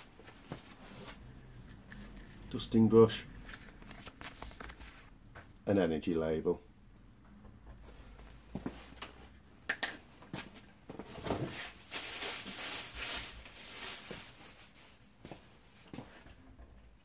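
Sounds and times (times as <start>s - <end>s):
packaging rustling and crinkling: 1.7s - 5.1s, 11.0s - 15.1s.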